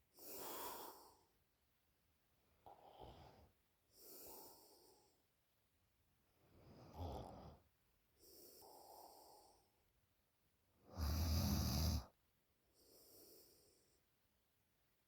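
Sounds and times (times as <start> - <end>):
woman snoring: 10.9 - 12.1.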